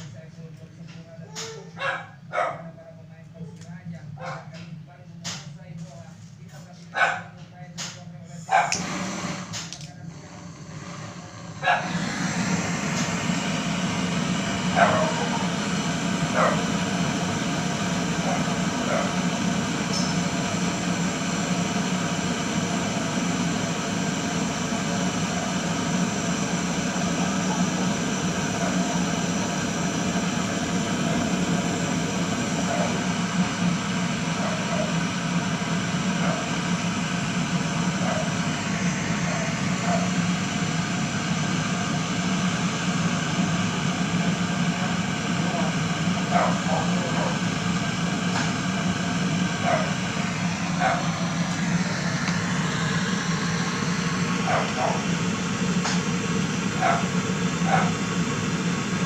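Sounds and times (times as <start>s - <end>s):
dog yipping: 1.7s - 2.7s
machine motor hum with hiss: 8.3s - 59.0s.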